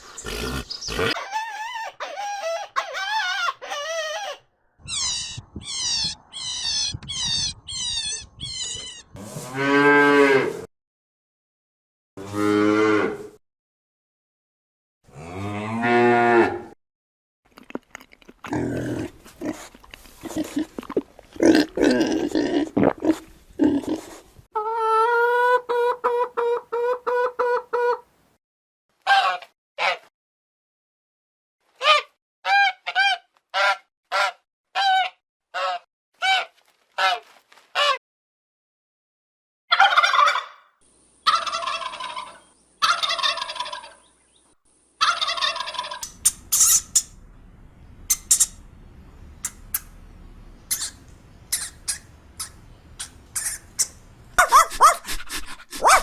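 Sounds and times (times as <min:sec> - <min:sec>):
animal grunting: 0:00.0 - 0:01.2, 0:18.4 - 0:24.2
turkey gobbling: 0:39.7 - 0:44.1, 0:45.0 - 0:47.0, 0:50.7 - 0:56.0.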